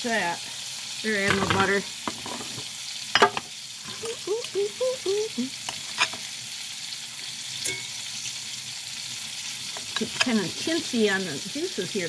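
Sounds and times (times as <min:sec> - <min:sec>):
chicken sizzling in a pan: 0:00.0 - 0:12.0
spatula scraping a pan: 0:01.3 - 0:02.7, 0:05.6 - 0:11.1.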